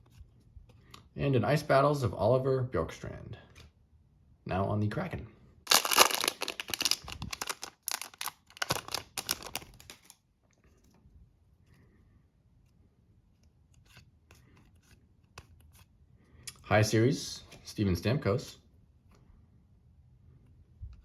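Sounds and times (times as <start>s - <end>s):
foil wrapper crinkling: 5.7s - 10.2s
cards rustling: 5.7s - 10.9s.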